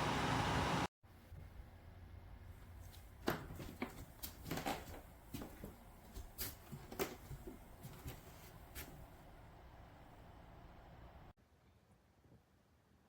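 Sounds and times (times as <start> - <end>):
low steady hum: 4.9 - 11.4.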